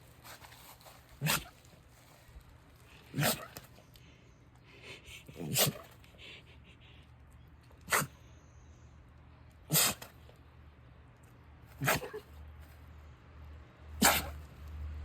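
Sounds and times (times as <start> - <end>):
dog sneezing: 1.2 - 1.5, 3.1 - 3.6, 5.4 - 6.0, 7.8 - 8.2, 9.7 - 10.2, 11.8 - 12.3, 14.0 - 14.4.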